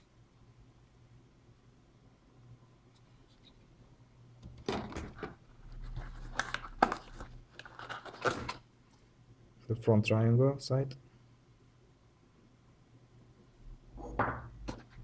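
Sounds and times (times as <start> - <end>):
plastic packaging rustling: 4.7 - 8.6.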